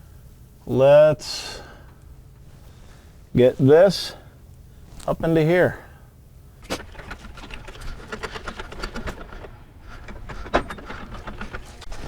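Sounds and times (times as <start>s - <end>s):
small clicks rattles and scrapes: 6.6s - 12.0s.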